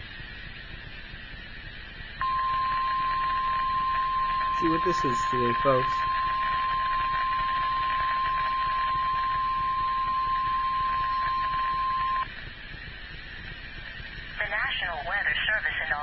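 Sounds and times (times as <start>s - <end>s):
radio static: 2.2s - 12.2s, 14.4s - 16.0s.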